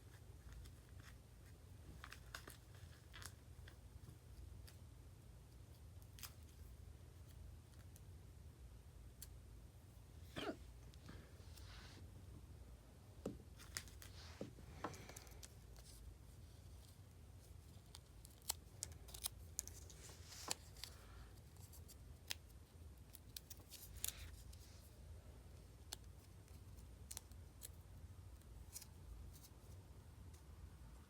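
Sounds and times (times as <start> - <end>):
low room hum: 0.0 - 31.0.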